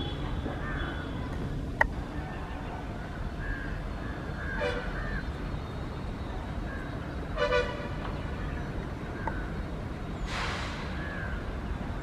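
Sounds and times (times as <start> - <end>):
train rumbling: 0.0 - 12.0
train horn toot: 7.4 - 8.0.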